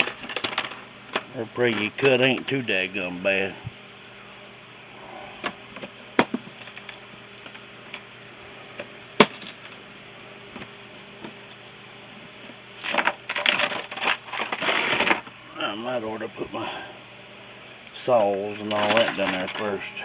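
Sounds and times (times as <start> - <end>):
tools clattering and rustling: 0.0 - 2.4, 12.8 - 15.3, 18.2 - 19.8.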